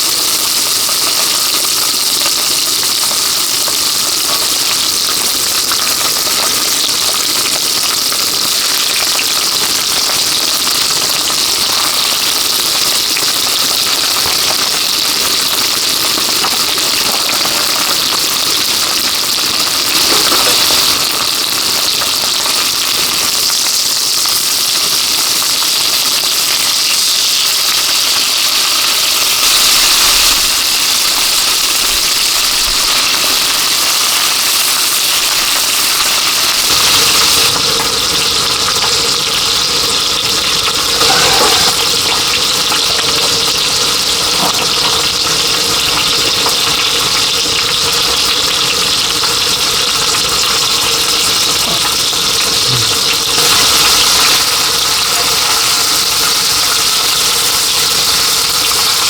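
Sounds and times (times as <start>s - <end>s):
heavy rain pouring: 29.3s - 59.0s.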